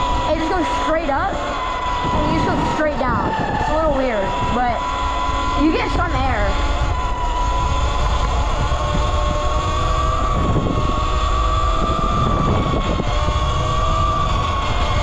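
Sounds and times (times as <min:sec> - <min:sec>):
electric motor whining: 0:00.0 - 0:15.0
wind rumbling on microphone: 0:00.0 - 0:15.0.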